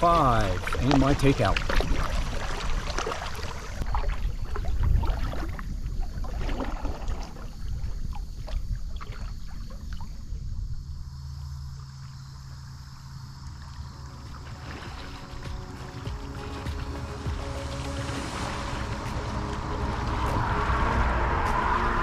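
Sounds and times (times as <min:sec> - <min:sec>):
kayak paddle dipping and dripping: 0:00.0 - 0:10.4, 0:13.1 - 0:21.9
water splashes: 0:00.0 - 0:10.5, 0:13.0 - 0:22.0
steady low rumble: 0:10.1 - 0:22.0.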